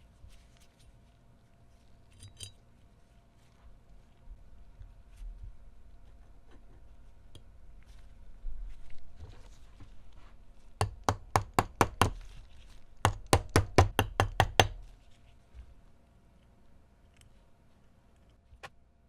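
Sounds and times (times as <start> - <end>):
rapid sharp knocks: 10.8 - 12.2, 13.1 - 14.8.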